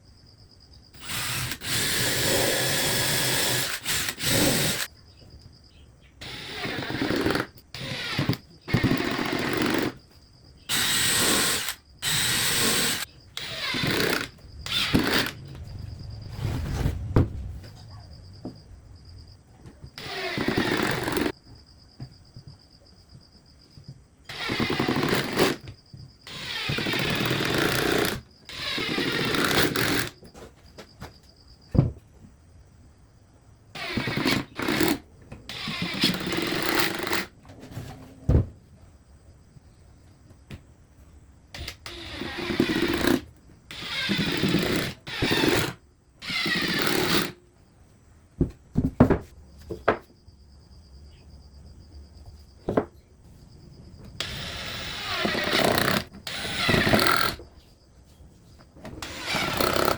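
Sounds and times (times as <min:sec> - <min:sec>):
power tool running on wood: 0:01.0 - 0:04.9, 0:10.7 - 0:15.4, 0:54.2 - 0:57.4, 0:59.0 - 0:59.9.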